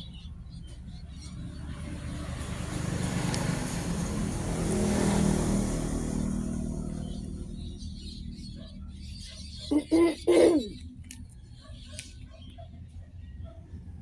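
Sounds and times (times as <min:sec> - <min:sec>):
vehicle passing by: 0:00.9 - 0:09.6.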